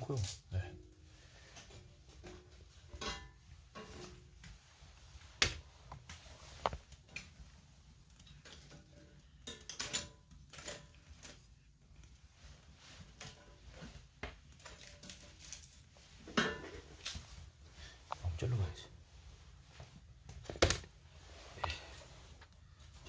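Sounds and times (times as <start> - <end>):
clicks and knocks of handling: 14.2 - 17.3.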